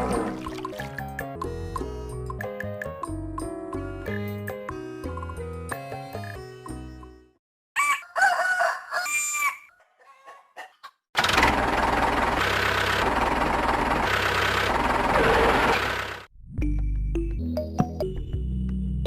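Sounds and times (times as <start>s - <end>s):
background music: 0.0s - 7.4s
rooster crowing: 7.8s - 10.8s.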